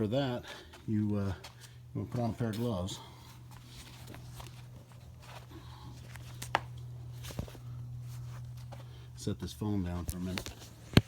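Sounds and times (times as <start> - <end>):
steady low hum: 0.0 - 11.0
handling and rustling: 0.4 - 9.2.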